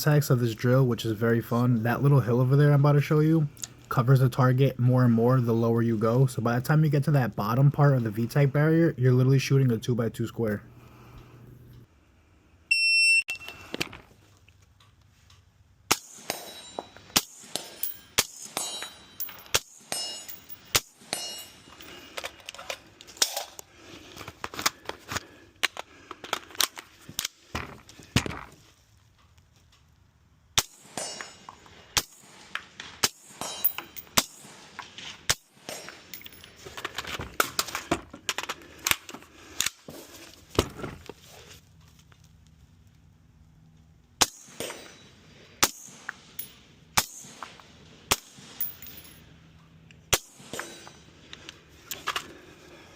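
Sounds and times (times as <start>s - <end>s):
shot timer beep: 12.7s - 13.6s
metallic rings of steel targets: 15.9s - 22.3s, 30.6s - 32.4s, 33.0s - 36.6s, 44.2s - 47.6s, 48.2s - 49.3s, 50.1s - 51.3s.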